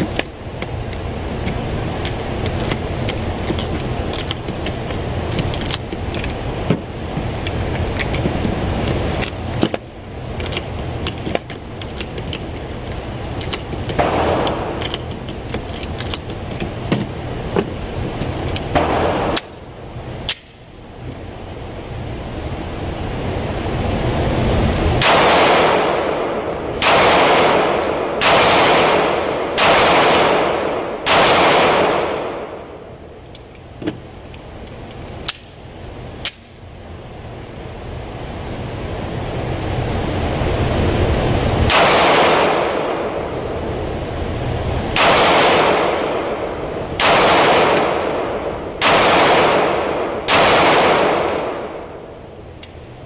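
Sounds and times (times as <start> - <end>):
shooting range noise: 10.5 - 20.8, 25.0 - 34.1, 41.6 - 43.6, 44.8 - 53.0
loud pistol shots: 14.0 - 14.8, 18.7 - 19.4, 25.0 - 32.6, 41.7 - 43.2, 45.0 - 46.3, 47.0 - 51.8.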